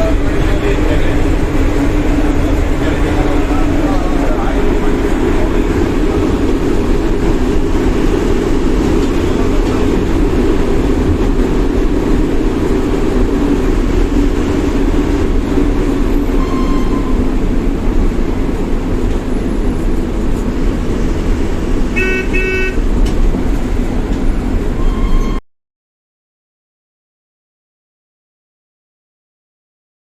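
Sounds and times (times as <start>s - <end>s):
bus engine and road noise: 0.0s - 25.4s
horn toots: 22.0s - 22.8s.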